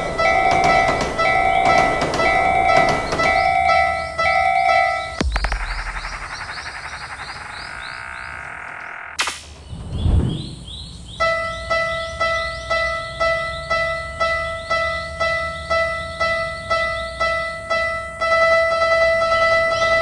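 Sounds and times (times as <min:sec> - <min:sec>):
level crossing warning bell dinging: 0:00.0 - 0:05.2, 0:11.2 - 0:20.0.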